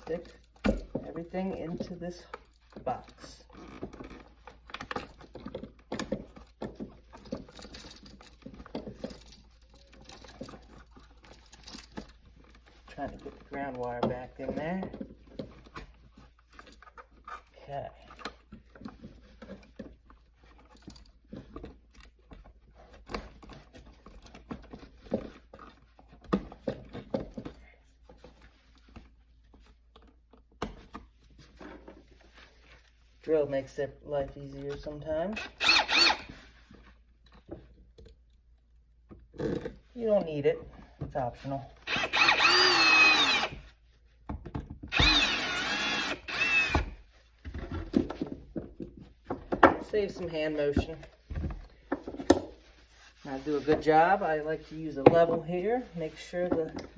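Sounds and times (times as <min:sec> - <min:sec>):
power drill driving screws: 0:35.3 - 0:36.4, 0:41.8 - 0:43.6, 0:44.9 - 0:47.0.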